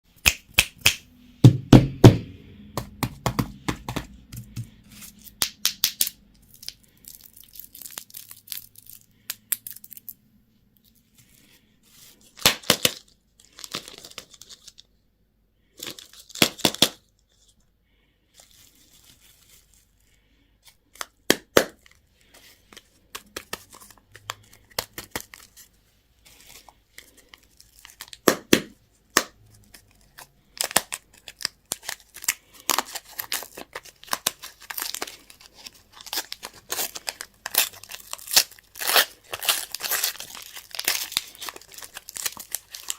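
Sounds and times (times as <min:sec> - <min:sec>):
packaging being torn and crinkled: 0:04.7 - 0:10.1, 0:12.3 - 0:14.9, 0:15.8 - 0:17.2, 0:26.3 - 0:28.6, 0:29.2 - 0:42.9.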